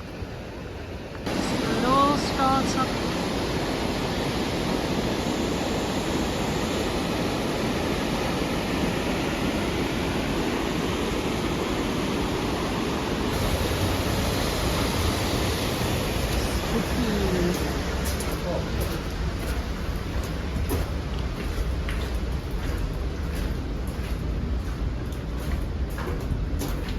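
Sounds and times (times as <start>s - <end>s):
river rushing over rocks: 1.2s - 19.8s.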